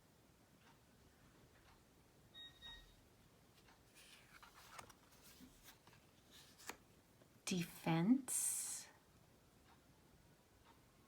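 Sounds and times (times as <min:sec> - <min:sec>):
faint beep: 0:02.4 - 0:03.0
cards rustling and clicking: 0:03.9 - 0:06.9.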